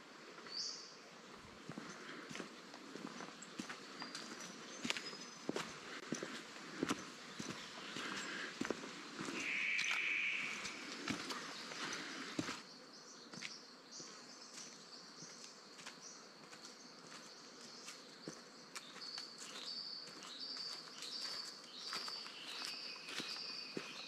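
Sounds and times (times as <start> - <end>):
faint footsteps on track: 1.6 - 12.7, 13.3 - 24.0
insects trilling: 6.8 - 23.9
repeated insect chirps: 9.3 - 11.2.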